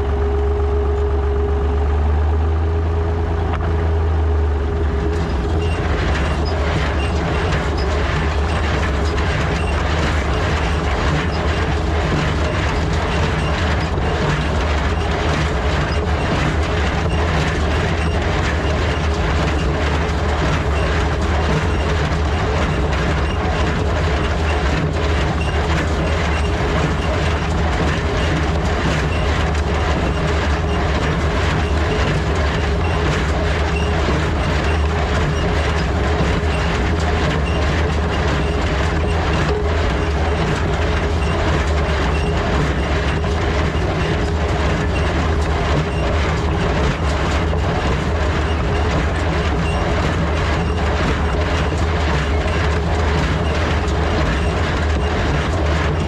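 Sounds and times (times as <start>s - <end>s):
hay baler rhythmic clatter: 0.0s - 56.0s
tractor engine running under load: 0.0s - 56.0s.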